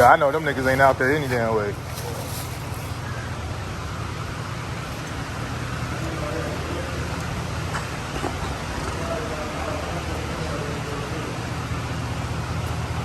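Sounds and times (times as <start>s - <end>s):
engine and road noise inside vehicle: 0.0s - 13.0s.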